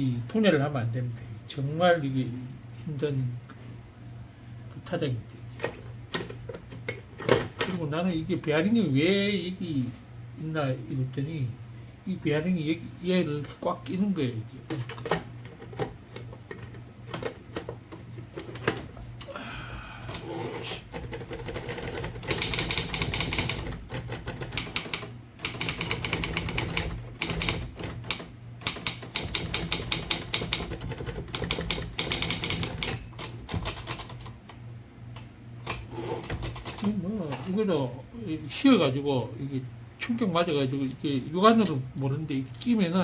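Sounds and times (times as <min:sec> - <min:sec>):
steady low hum: 0:00.0 - 0:43.0
typewriter key strikes: 0:21.4 - 0:34.3.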